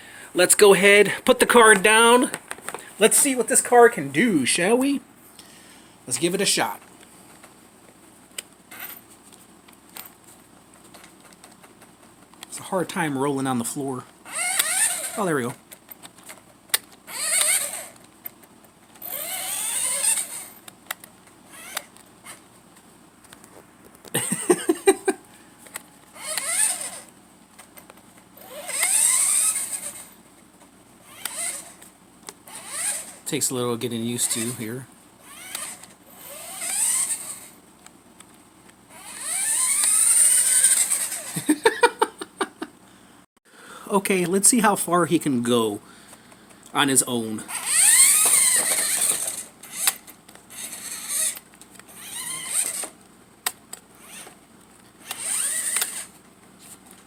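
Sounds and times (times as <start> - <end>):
toy car electric motor whining: 14.3 - 15.3, 17.1 - 18.0, 19.0 - 20.7, 21.5 - 22.4, 25.6 - 27.1, 28.4 - 30.2, 31.0 - 31.9, 32.5 - 33.3, 34.1 - 37.6, 38.9 - 41.6, 47.5 - 53.0, 54.0 - 54.4, 55.0 - 56.2.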